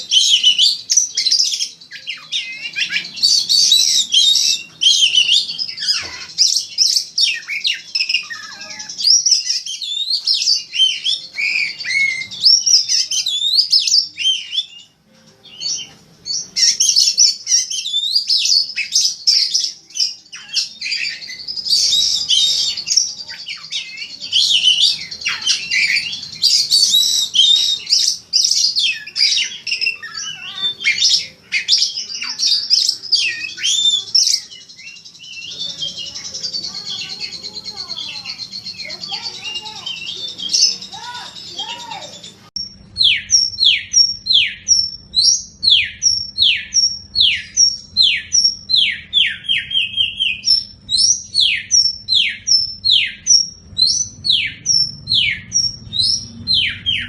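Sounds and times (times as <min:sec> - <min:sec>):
bird singing whistles and chatter: 0:00.0 - 0:57.0.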